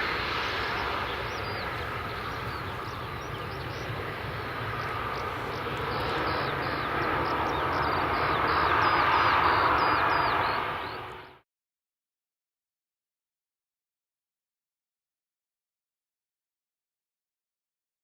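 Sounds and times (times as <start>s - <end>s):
jet engines rumbling: 0.0s - 11.4s.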